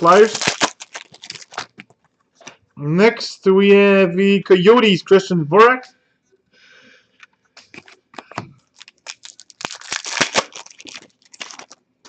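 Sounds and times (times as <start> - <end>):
card pack tearing: 0.0 - 1.9, 7.6 - 11.8
cards rustling and flicking: 0.0 - 2.0, 7.6 - 11.8.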